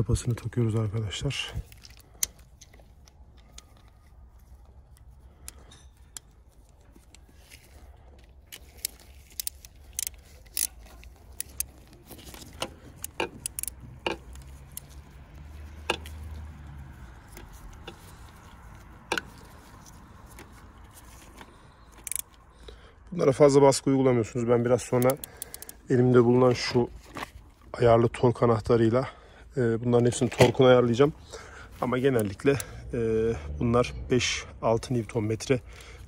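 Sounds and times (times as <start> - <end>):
metallic clicks of hand tools: 8.4 - 15.0, 15.7 - 16.4, 21.3 - 22.4, 24.9 - 25.8.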